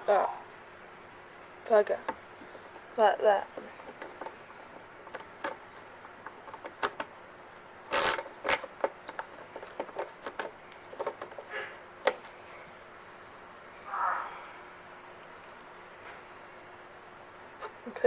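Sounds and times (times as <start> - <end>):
plastic parts clicking and tapping: 3.5 - 12.3.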